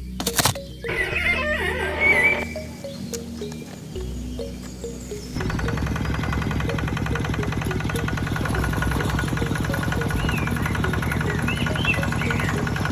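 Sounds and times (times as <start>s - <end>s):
small engine idling: 2.4s - 12.9s.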